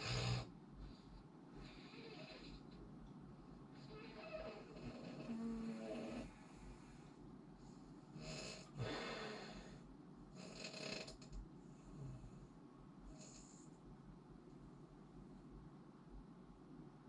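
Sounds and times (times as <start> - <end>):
person snoring: 0.0 - 0.5, 3.9 - 6.3, 8.2 - 9.8.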